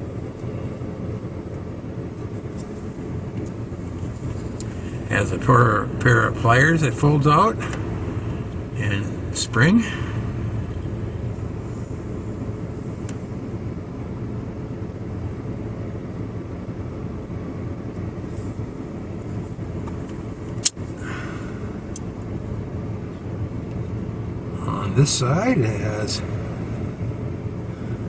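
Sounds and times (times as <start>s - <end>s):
car engine hum: 0.0s - 28.0s
sharp click: 20.6s - 20.8s.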